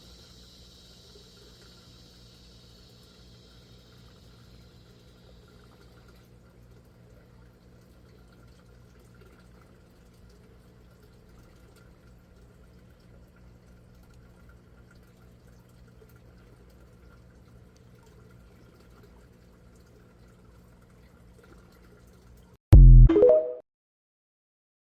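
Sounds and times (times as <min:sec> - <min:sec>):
water trickling and pouring: 0:02.9 - 0:22.6
loud burst of music: 0:22.8 - 0:23.6.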